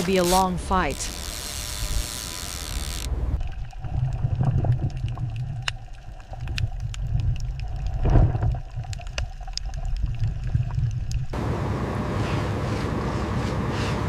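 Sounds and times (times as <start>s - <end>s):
water splashing: 3.2s - 11.4s
boat engine deep rumble: 11.2s - 14.0s.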